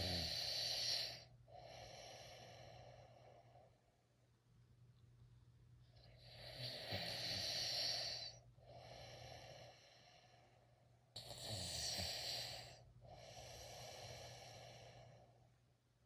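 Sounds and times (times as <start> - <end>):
person snoring: 0.0 - 1.2, 6.4 - 8.4, 11.2 - 15.1
quiet breath: 0.0 - 4.1, 5.8 - 16.0.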